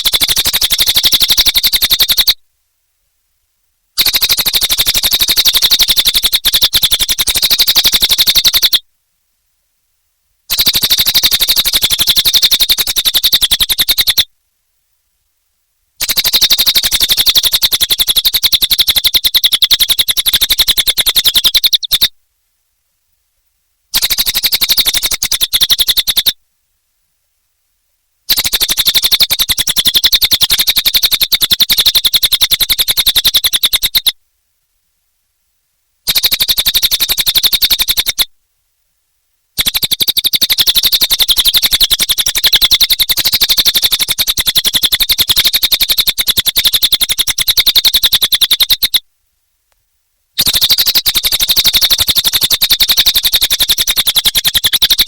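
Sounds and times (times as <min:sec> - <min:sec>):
songbird rattling trill: 0:00.0 - 0:02.4, 0:04.0 - 0:08.8, 0:10.5 - 0:14.3, 0:16.0 - 0:22.2, 0:23.9 - 0:26.4, 0:28.3 - 0:34.2, 0:36.0 - 0:38.3, 0:39.6 - 0:49.0, 0:50.4 - 0:55.0.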